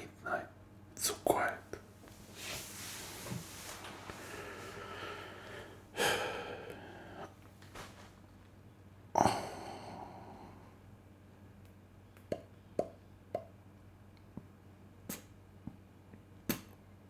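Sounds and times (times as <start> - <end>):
person breathing out: 2.4 - 7.4.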